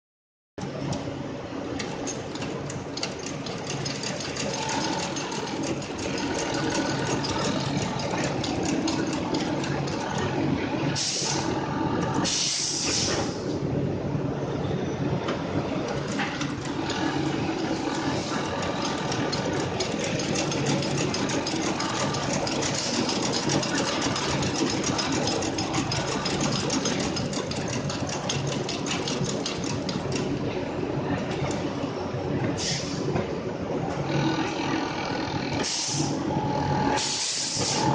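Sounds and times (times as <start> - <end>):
stitching machine clatter: 1.7 - 13.4, 15.7 - 31.7
motor hum: 15.7 - 30.3, 33.8 - 37.1
stitching machine needle clicking: 18.4 - 30.3.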